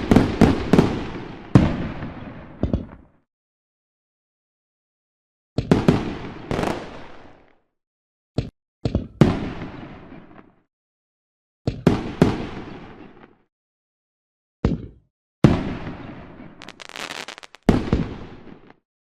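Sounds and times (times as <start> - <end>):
firework crackling: 16.6 - 17.8
firework bangs: 16.6 - 18.4.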